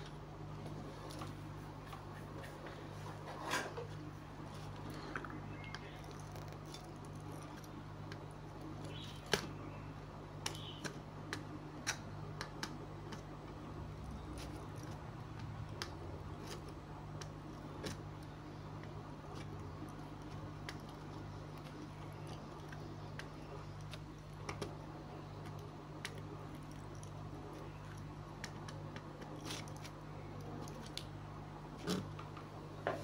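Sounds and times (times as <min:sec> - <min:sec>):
steady low hum: 0:00.0 - 0:33.0.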